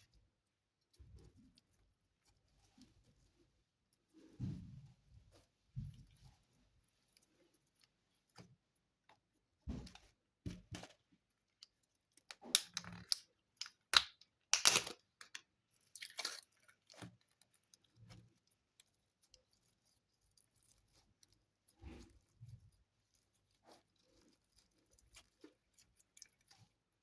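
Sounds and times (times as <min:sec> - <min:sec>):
slime crackling and squishing: 0:10.6 - 0:27.0.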